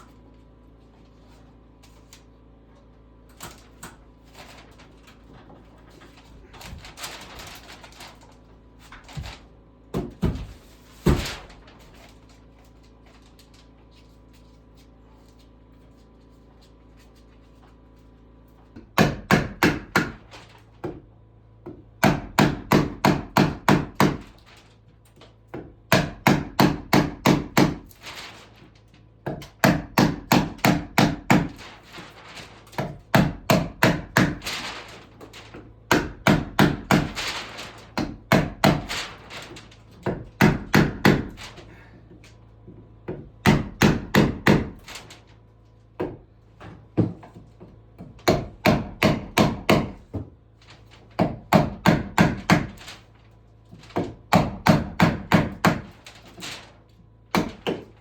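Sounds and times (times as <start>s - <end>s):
hammer hitting nails into wood: 18.8s - 20.2s, 22.0s - 24.2s, 25.9s - 27.8s, 29.3s - 31.5s, 32.8s - 34.4s, 43.1s - 44.8s, 48.0s - 50.2s, 51.2s - 52.7s, 54.0s - 55.9s, 57.3s - 57.9s.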